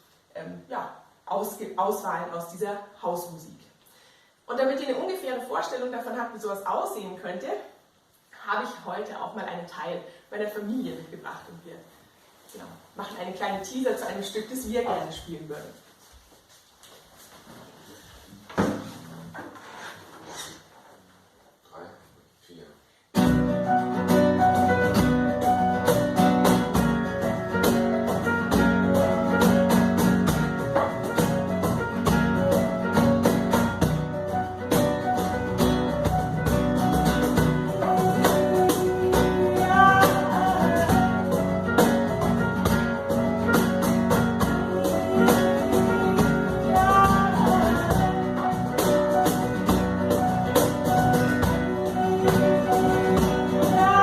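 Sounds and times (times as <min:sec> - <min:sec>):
guitar playing: 0:23.2 - 0:54.0
quick percussion beat: 0:23.2 - 0:54.0
people singing: 0:51.7 - 0:54.0.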